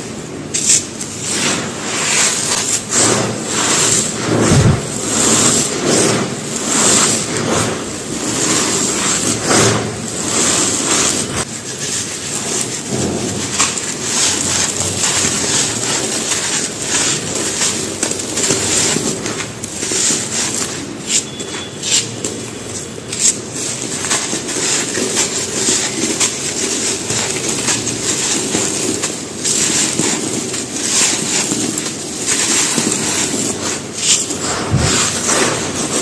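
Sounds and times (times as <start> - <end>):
dry mud brick crunching: 11.7 - 36.0.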